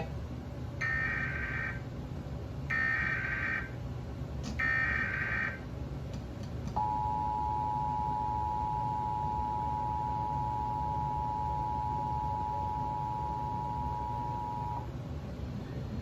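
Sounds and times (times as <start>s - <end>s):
two-tone attention signal: 6.8s - 14.8s.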